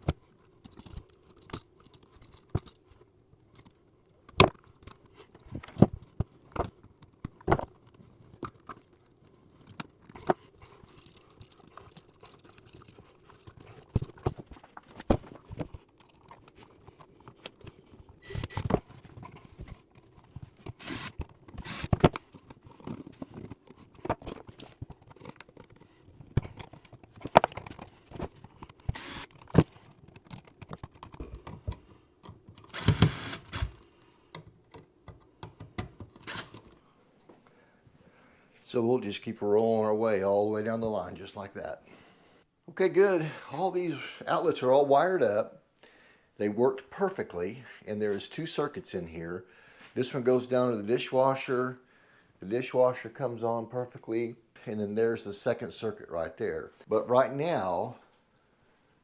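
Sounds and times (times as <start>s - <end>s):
tools clicking and tapping: 15.5s - 36.8s.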